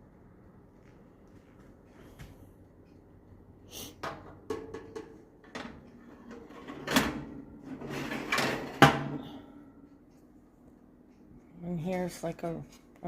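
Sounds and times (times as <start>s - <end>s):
metal trays clanking: 4.5s - 9.6s
metal trays scraping: 5.6s - 9.5s.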